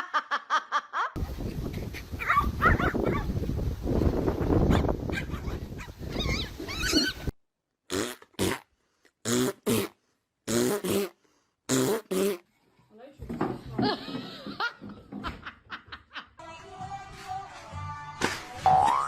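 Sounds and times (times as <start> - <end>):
dog barking: 2.2 - 3.3, 4.7 - 5.9
dog whining: 5.2 - 7.3.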